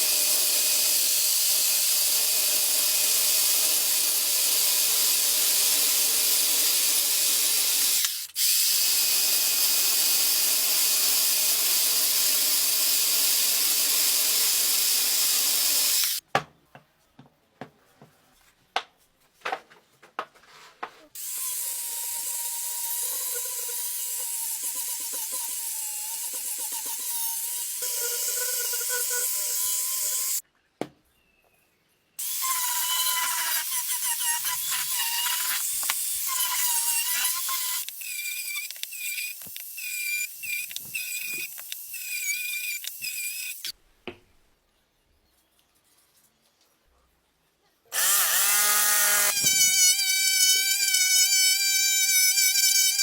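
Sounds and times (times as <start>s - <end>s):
power tool whining cutting wood: 21.2s - 30.4s, 32.2s - 43.7s, 47.9s - 53.0s.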